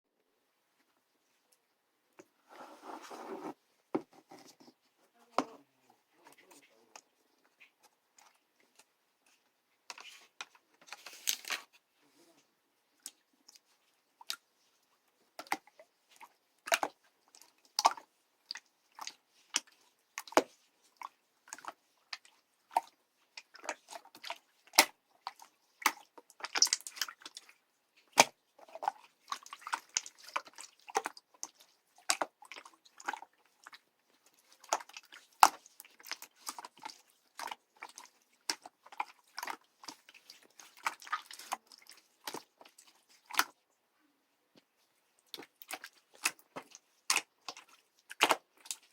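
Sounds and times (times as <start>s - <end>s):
slime squishing: 13.0s - 43.6s, 44.6s - 48.9s.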